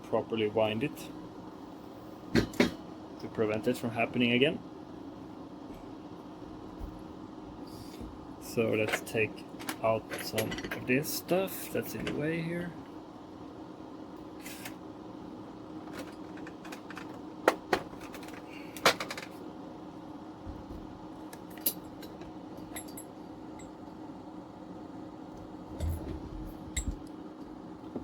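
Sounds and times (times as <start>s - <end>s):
faint steady hum: 0.0s - 28.0s
tools clicking and knocking: 15.9s - 19.3s.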